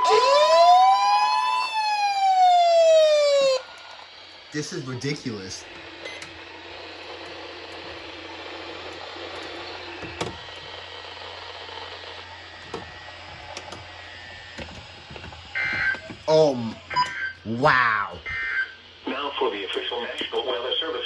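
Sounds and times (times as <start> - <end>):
radio static hiss: 4.4 - 6.1, 15.6 - 21.0.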